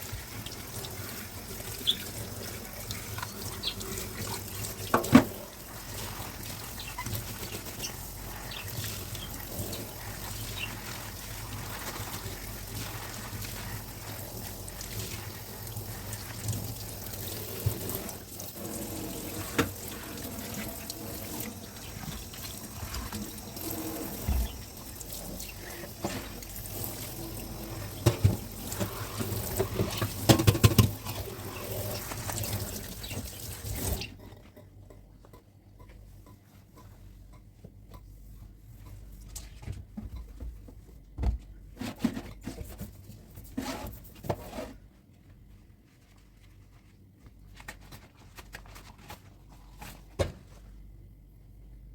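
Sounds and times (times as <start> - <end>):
water running in sink: 0.0 - 35.0
dishes knocking: 29.9 - 31.0.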